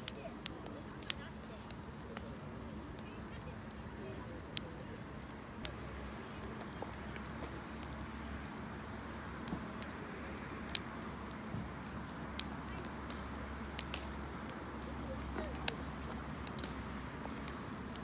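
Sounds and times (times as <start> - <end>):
fire crackling pops: 0.0 - 18.0
wood campfire burning: 0.0 - 18.0.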